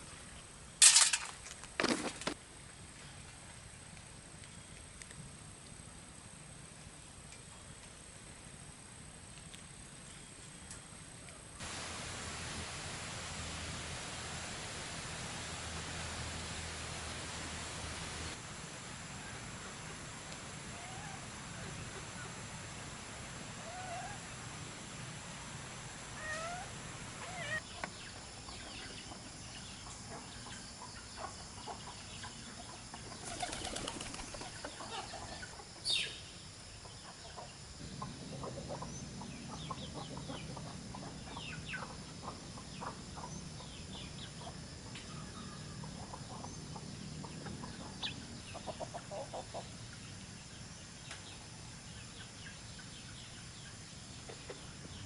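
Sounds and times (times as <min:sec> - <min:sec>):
chickens clucking: 0:27.2 - 0:36.0, 0:36.8 - 0:43.8, 0:44.4 - 0:49.7, 0:53.6 - 0:55.0
wings flapping: 0:33.2 - 0:34.7.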